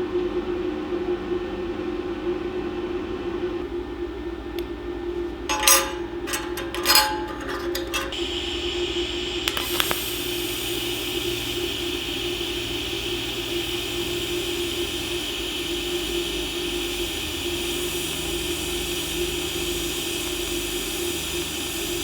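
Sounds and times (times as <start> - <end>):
welding arc hiss: 9.5 - 22.0.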